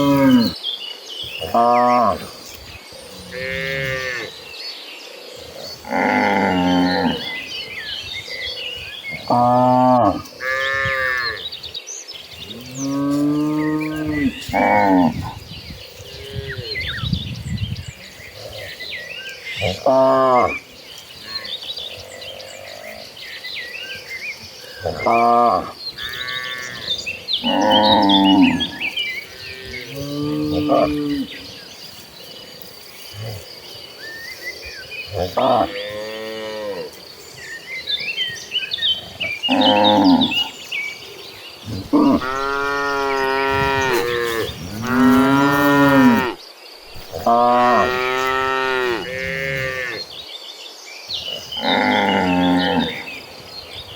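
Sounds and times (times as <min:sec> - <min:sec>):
birds chirping faintly: 0:00.0 - 0:53.9
cattle mooing: 0:24.8 - 0:31.3, 0:39.2 - 0:40.5, 0:41.7 - 0:46.4, 0:47.0 - 0:50.0.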